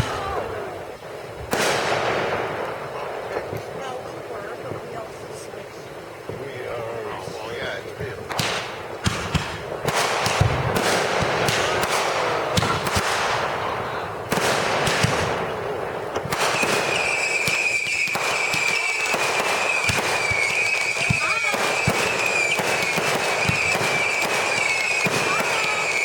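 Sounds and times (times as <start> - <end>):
fireworks bangs and crackling: 0.0 - 26.0
steady high whistle: 16.7 - 26.0.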